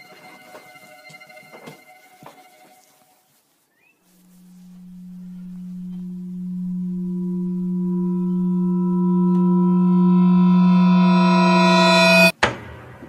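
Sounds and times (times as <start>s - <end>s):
higher tones: 4.2s - 12.3s
low droning tone: 4.2s - 12.3s.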